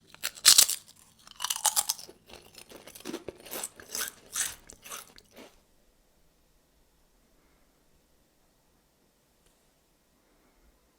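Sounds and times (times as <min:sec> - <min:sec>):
chocolate crunching and chewing: 0:00.0 - 0:05.6.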